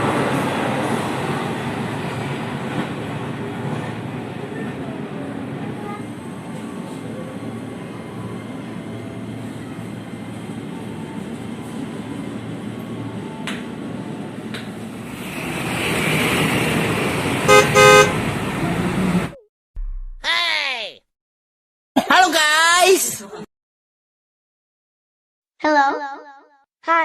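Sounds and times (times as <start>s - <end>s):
train rumbling: 0.0s - 19.4s
train horn toots: 17.5s - 18.3s.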